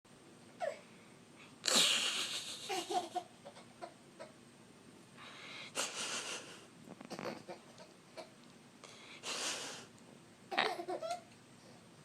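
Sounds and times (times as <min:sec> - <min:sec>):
small child giggling: 0:01.7 - 0:04.4, 0:10.5 - 0:11.3.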